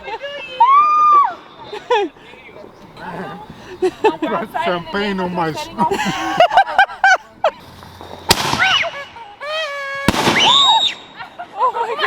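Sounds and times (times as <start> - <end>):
people shrieking: 0.4 - 1.4, 2.8 - 6.6
loud firework bangs: 8.0 - 9.2, 10.0 - 11.0.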